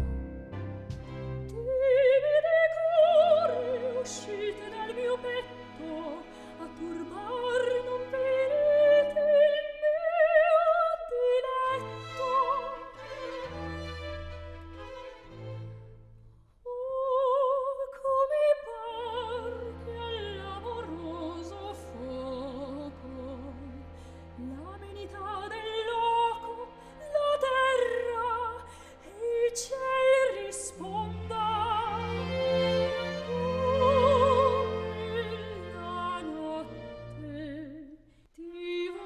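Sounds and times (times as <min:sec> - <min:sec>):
held low accompanying notes: 0:00.0 - 0:01.7
operatic high singing voice: 0:24.4 - 0:39.0.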